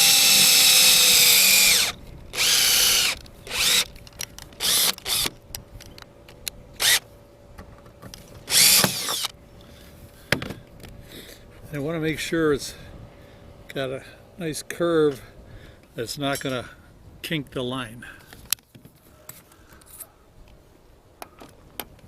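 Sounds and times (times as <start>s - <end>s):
power drill boring: 0.0s - 3.9s, 4.6s - 5.3s, 6.8s - 7.0s, 8.5s - 9.3s.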